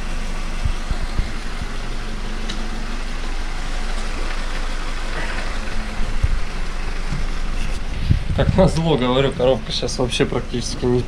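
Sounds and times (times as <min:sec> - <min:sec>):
car engine idling: 0:00.0 - 0:11.0
short low thuds: 0:06.1 - 0:09.4.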